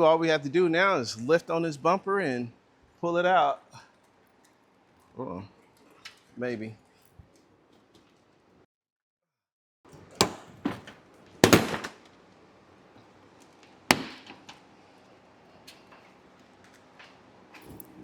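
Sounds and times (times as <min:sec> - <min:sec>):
plastic cracking and snapping: 0:10.2 - 0:12.2.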